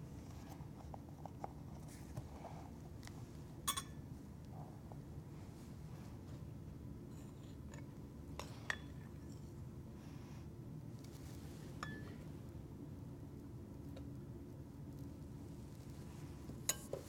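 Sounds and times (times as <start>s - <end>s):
low room hum: 0.0s - 17.0s
kitchenware clinking against bowl: 3.7s - 4.0s, 11.8s - 12.2s, 16.7s - 17.0s.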